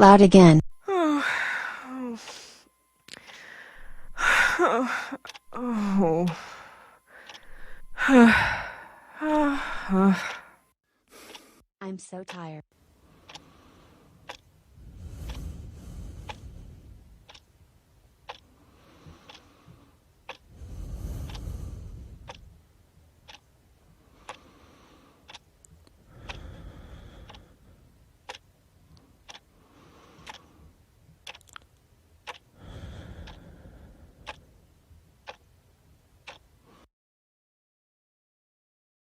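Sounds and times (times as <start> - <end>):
clock ticking: 3.1 - 4.6, 5.2 - 6.6, 7.2 - 8.7, 12.1 - 12.6, 13.3 - 13.5, 14.2 - 14.5, 17.2 - 17.6, 18.2 - 18.4, 19.0 - 19.5, 20.2 - 20.5, 21.2 - 21.5, 22.2 - 22.5, 23.2 - 23.6, 24.2 - 24.5, 25.2 - 25.5, 27.2 - 27.4, 28.2 - 28.5, 29.2 - 29.5, 30.2 - 30.5, 31.2 - 31.6, 32.2 - 32.5, 33.2 - 33.4, 34.2 - 34.4, 35.2 - 35.6, 36.2 - 36.5.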